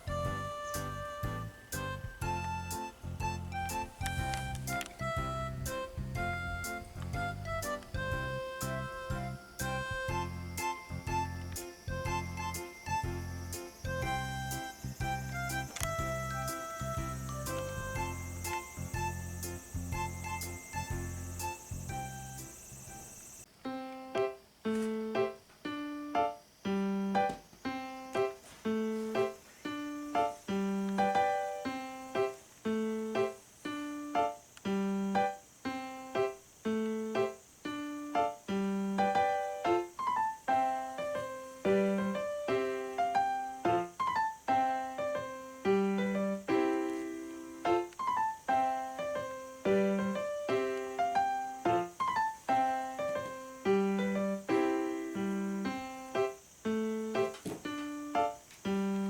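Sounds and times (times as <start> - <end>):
repeating bass figure: 0.0 - 22.5
light piano tune: 0.0 - 59.0.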